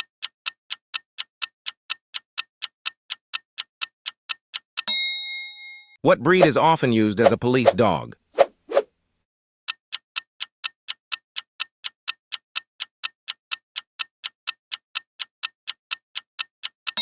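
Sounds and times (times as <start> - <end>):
clock-like ticking: 0.0 - 5.0, 9.7 - 17.0.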